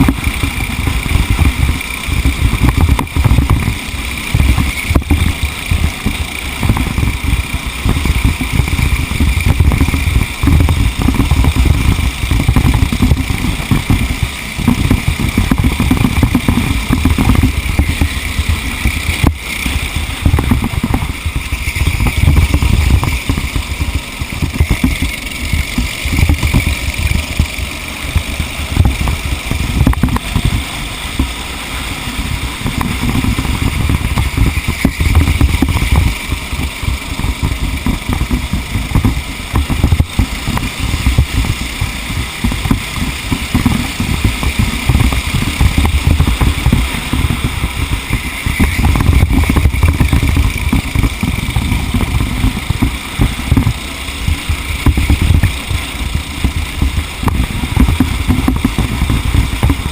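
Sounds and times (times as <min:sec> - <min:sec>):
rough road noise: 0:00.0 - 0:59.9
vehicle engine rumbling: 0:00.0 - 0:59.9.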